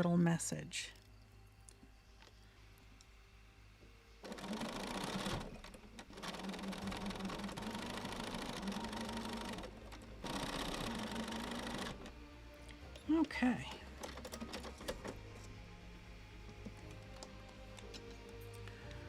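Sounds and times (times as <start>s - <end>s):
electric sewing machine stitching: 4.2s - 19.0s.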